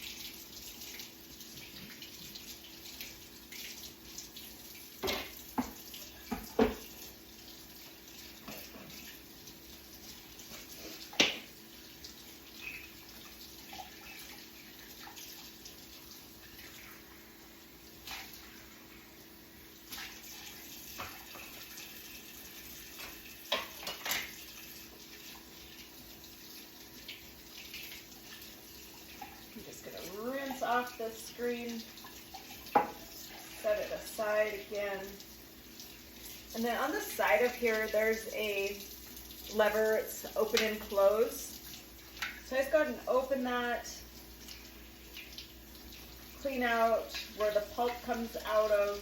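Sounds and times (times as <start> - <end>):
kitchen tap running: 0.0 - 49.0
parts knocking in sink: 5.0 - 6.9.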